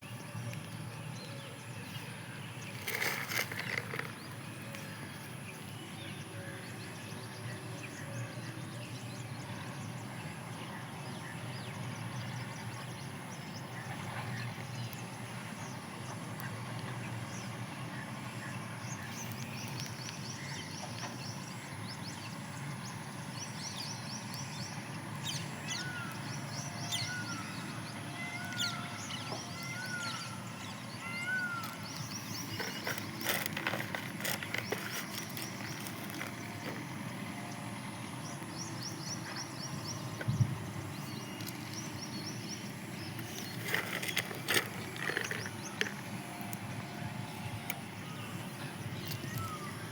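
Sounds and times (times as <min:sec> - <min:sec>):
birds chirping trills: 0:00.0 - 0:49.9
steady low hum: 0:00.0 - 0:49.9
rising-and-falling bird calls: 0:25.2 - 0:36.7, 0:38.7 - 0:49.9.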